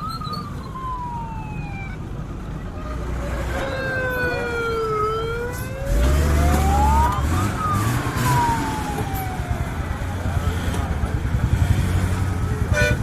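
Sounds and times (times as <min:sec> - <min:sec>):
emergency sirens wailing: 0:00.0 - 0:11.3.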